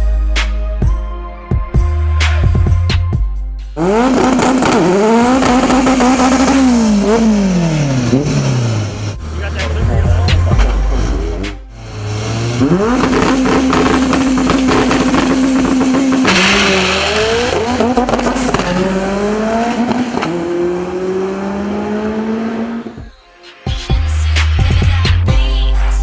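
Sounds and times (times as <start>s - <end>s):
turbocharged car engine revving: 3.8s - 23.1s
loud noisy burst: 12.0s - 20.2s.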